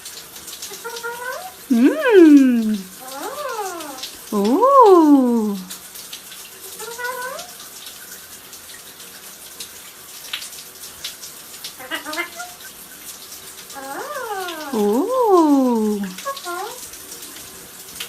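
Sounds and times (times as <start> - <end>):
parrot calling: 0.7 - 4.3, 6.8 - 7.5, 11.8 - 12.7, 13.8 - 16.8.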